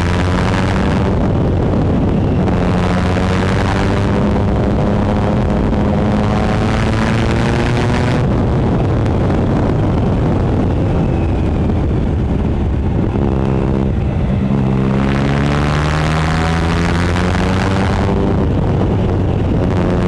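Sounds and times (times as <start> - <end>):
motorcycle engine burbling and revving: 0.0 - 20.0.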